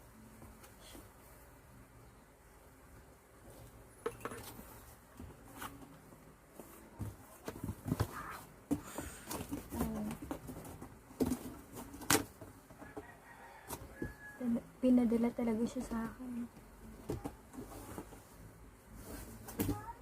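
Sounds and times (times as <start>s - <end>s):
objects and packaging handled: 3.5s - 14.3s, 16.9s - 20.0s.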